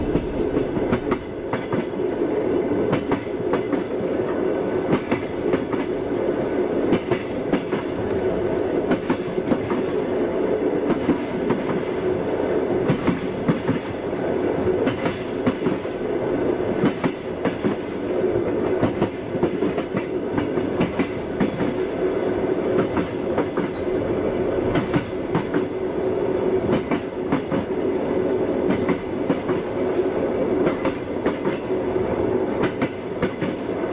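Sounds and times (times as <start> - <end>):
railway carriage rumbling: 0.0 - 33.9
train wheels clattering over rail joints: 18.8 - 21.8.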